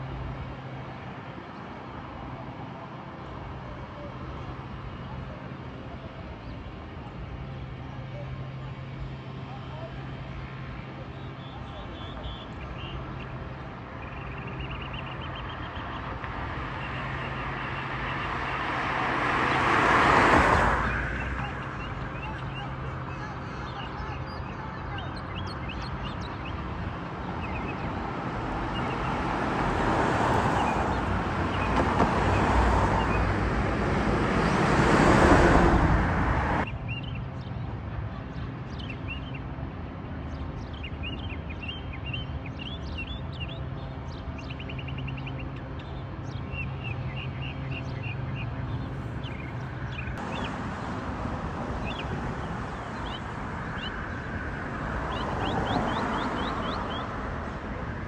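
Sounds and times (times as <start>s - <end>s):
car passing: 16.1s - 23.3s, 27.6s - 36.7s, 48.6s - 58.0s
small birds chirping: 55.1s - 57.1s.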